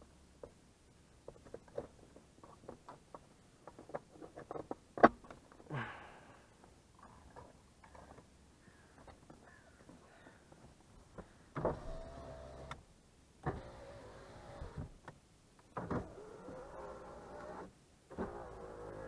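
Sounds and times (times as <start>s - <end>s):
power window motor whine: 11.6s - 12.8s, 13.5s - 14.9s, 15.8s - 19.0s.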